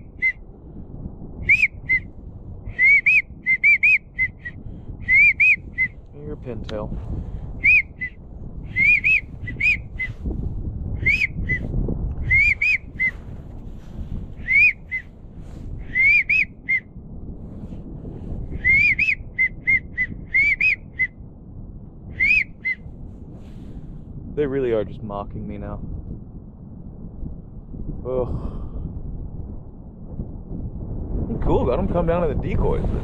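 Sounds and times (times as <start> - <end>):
whistled duck calls: 0.0 - 0.4, 1.5 - 2.1, 2.7 - 6.0, 7.6 - 10.1, 11.0 - 11.6, 12.3 - 13.2, 14.4 - 15.1, 15.8 - 16.9, 18.6 - 21.2, 22.2 - 22.8
low wind rumble: 0.0 - 33.0.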